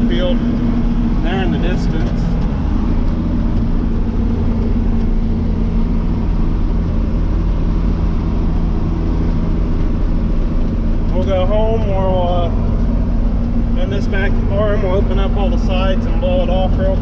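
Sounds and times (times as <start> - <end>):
tractor engine running: 0.0 - 17.0.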